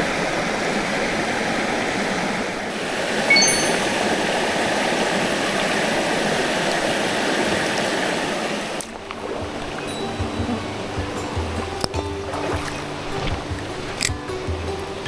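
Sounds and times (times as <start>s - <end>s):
rushing mountain stream: 0.0s - 15.0s
short high chime: 3.3s - 4.1s
music with held notes: 9.3s - 15.0s.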